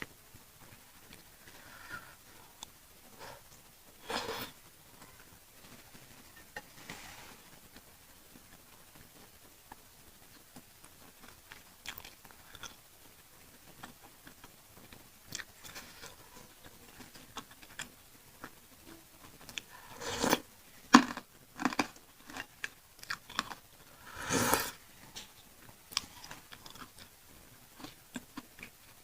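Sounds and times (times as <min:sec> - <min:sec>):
chewing food: 0:11.2 - 0:12.9, 0:13.6 - 0:27.2.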